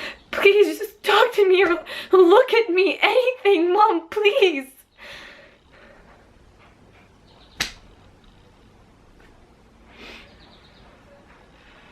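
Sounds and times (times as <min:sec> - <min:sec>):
sharp click: 0:07.6 - 0:07.9.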